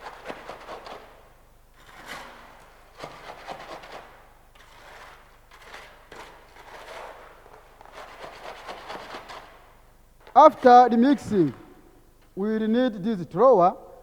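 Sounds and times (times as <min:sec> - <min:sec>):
tool scraping wet concrete: 0:01.8 - 0:11.5.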